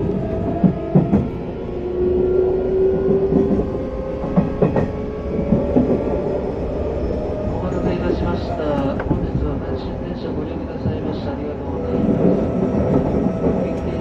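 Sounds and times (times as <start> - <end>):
rail rumble: 0.0 - 14.0.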